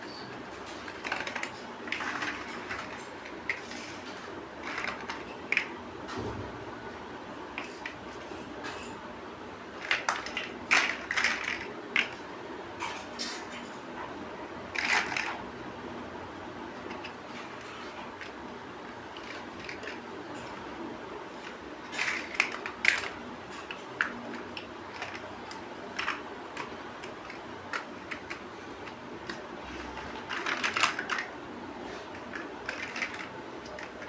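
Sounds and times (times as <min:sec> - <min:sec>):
plastic bricks clicking: 0:21.4 - 0:23.2, 0:24.0 - 0:31.3, 0:32.1 - 0:34.0.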